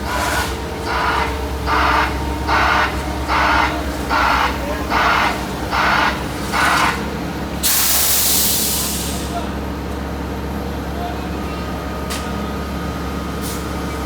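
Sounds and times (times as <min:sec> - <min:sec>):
buzzy backup alarm pulsing: 0:00.0 - 0:07.0
diesel engine running: 0:00.0 - 0:14.0.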